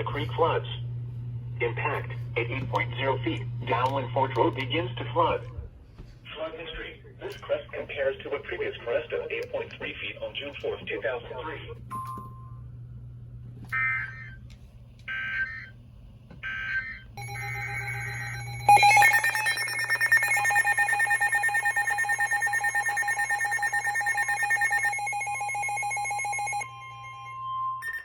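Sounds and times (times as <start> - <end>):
pulsing two-tone alarm: 15.1 - 15.7, 16.4 - 28.0
screeching digital data bursts: 17.2 - 26.7.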